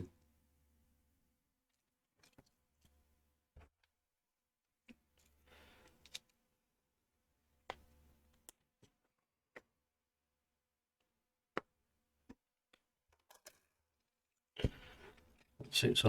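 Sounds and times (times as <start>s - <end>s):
plastic parts clicking together: 12.3s - 13.7s.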